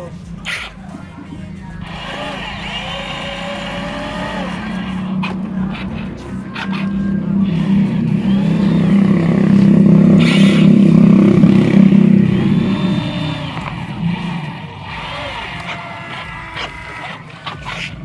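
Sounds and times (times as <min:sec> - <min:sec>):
engine running steadily: 0:00.0 - 0:18.0.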